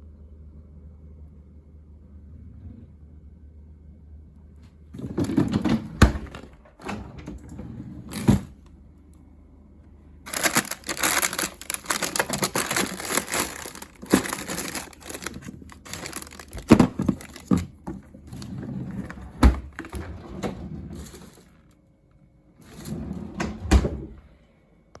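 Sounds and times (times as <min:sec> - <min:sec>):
crinkling and rustling: 0:04.9 - 0:08.7, 0:10.3 - 0:21.8.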